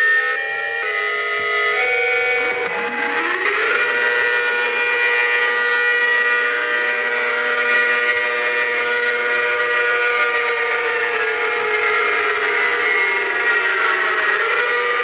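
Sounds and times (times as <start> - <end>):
warning siren steady tone: 0.0 - 15.0.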